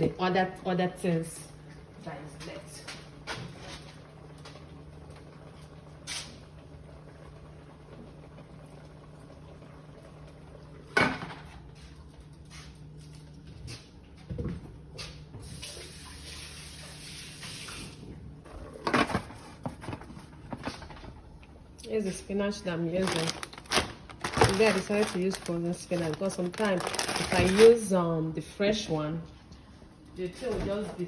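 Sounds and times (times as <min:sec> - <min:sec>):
water running from a tap: 0:15.4 - 0:18.0.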